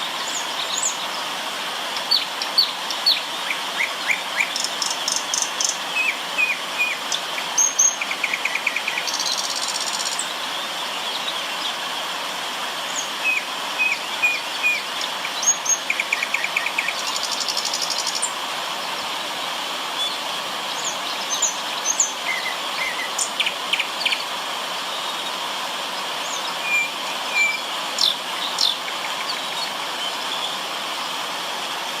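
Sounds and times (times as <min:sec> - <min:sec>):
river water running: 0:00.0 - 0:32.0
birds chirping and trilling: 0:26.1 - 0:30.6.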